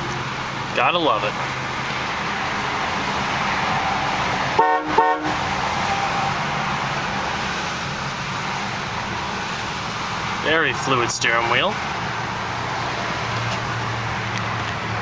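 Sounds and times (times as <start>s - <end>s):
distant highway traffic: 0.0s - 15.0s
car horn toots: 4.6s - 6.2s.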